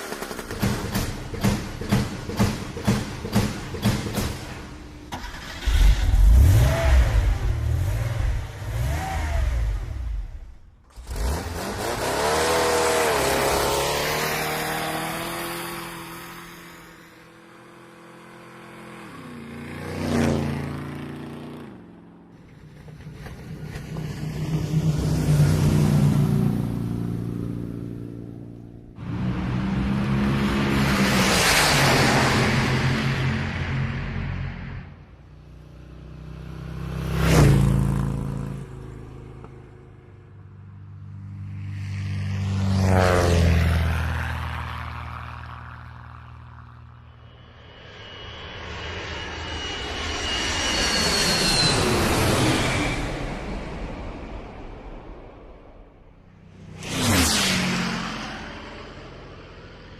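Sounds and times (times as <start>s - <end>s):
car engines revving and passing: 4.4s - 47.2s, 56.2s - 59.9s.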